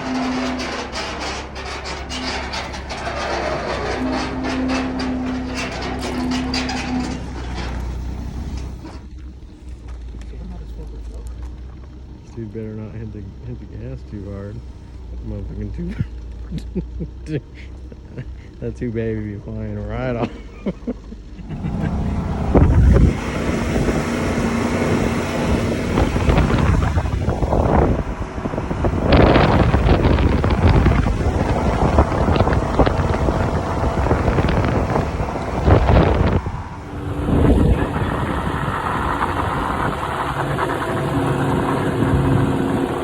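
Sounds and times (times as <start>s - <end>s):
vehicle engine pulling under load: 0.0s - 43.0s
wind buffeting microphone: 21.6s - 43.0s.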